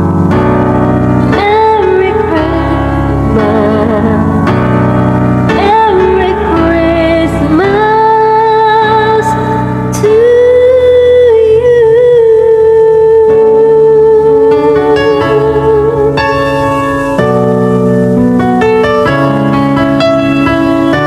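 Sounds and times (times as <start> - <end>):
piano accompaniment: 0.0 - 21.0
person singing: 1.2 - 4.7, 5.5 - 16.9.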